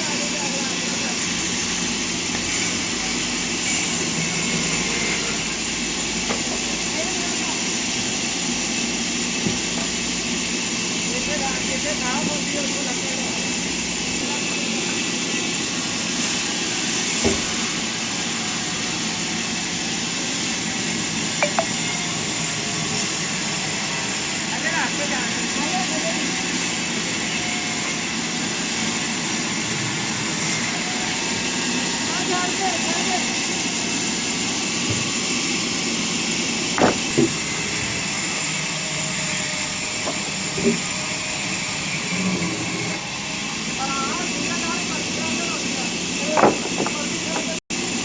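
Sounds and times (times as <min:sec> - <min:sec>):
sawmill machinery humming: 0:00.0 - 0:48.0
knock: 0:36.8 - 0:37.3, 0:46.4 - 0:47.0.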